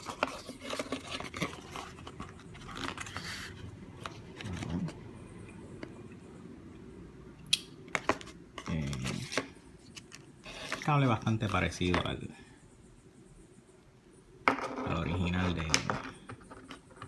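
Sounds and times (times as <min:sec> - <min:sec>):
packaging rustling and scraping: 0:00.0 - 0:05.0, 0:08.0 - 0:12.2.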